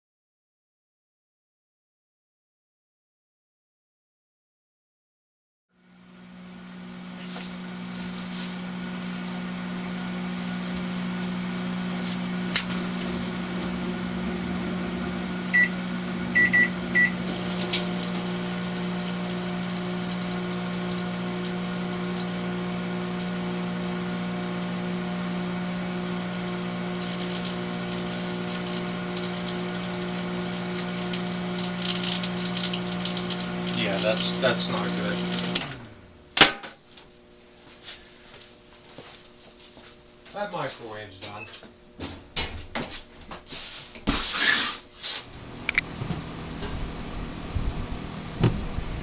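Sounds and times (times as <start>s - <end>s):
microwave oven humming: 5.8s - 43.2s, 45.3s - 49.0s
short high beeps: 16.4s - 17.2s.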